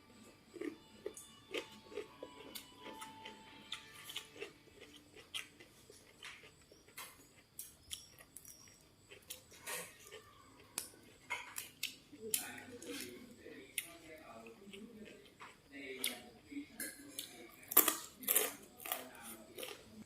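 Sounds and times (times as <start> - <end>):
chewing and biting: 0.2 - 16.3, 17.2 - 20.0
cutlery clinking on dishes: 11.2 - 11.8.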